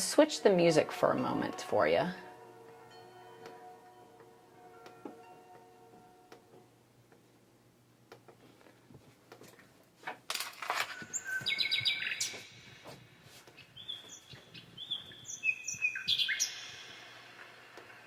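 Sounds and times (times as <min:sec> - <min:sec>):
clicks and rustles: 0:08.2 - 0:13.7
bird-like chirps from speaker: 0:11.0 - 0:12.4, 0:13.8 - 0:17.2.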